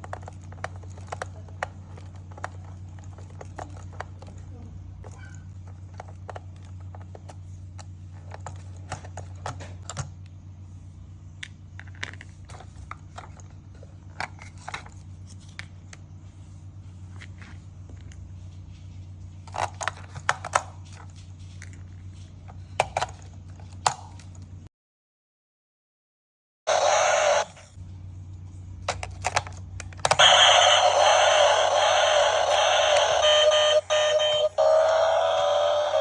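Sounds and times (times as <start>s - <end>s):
steady low hum: 26.7s - 36.0s.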